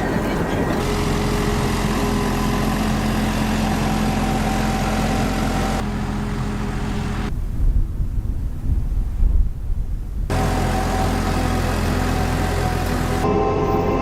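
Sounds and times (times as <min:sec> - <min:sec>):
engine hum: 0:00.0 - 0:08.6, 0:10.2 - 0:14.0
whining tones: 0:12.2 - 0:14.0.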